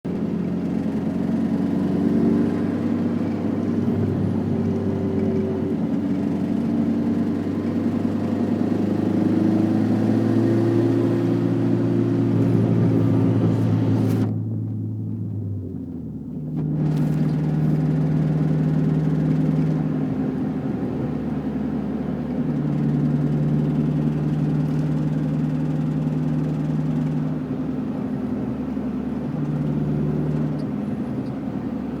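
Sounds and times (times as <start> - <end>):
car engine running at low rpm: 0.1 - 32.0
engine ticking noise: 22.2 - 32.0.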